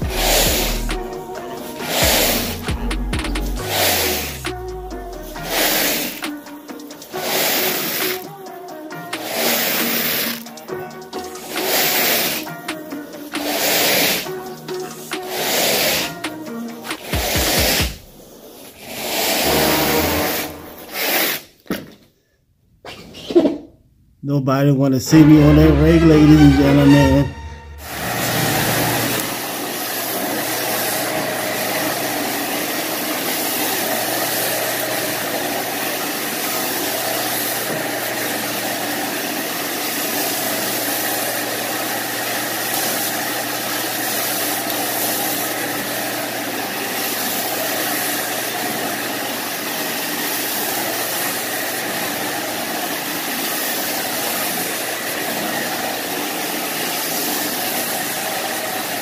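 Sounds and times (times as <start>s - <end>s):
carpet cleaning machine motor hum: 0.0s - 6.6s, 7.2s - 8.1s, 27.8s - 59.0s.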